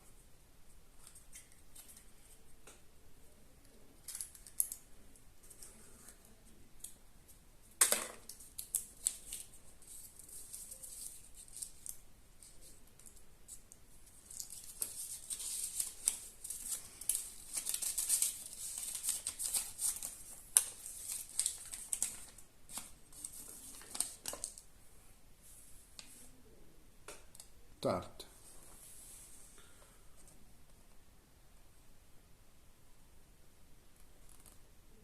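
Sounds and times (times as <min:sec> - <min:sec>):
foil wrapper crinkling: 0:14.3 - 0:24.6.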